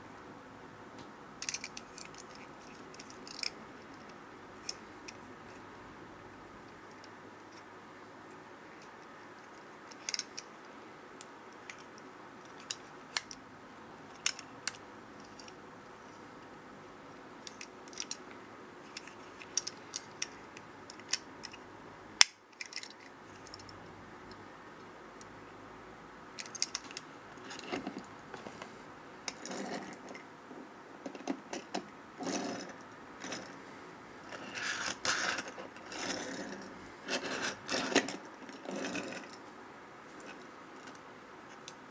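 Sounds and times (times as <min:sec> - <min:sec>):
toy truck parts clicking: 0:01.4 - 0:05.2, 0:09.5 - 0:10.5, 0:12.5 - 0:13.4, 0:14.1 - 0:15.6, 0:17.4 - 0:18.2, 0:18.9 - 0:21.6, 0:22.2 - 0:23.8, 0:26.4 - 0:27.9
rattling and rubbing: 0:34.3 - 0:39.4.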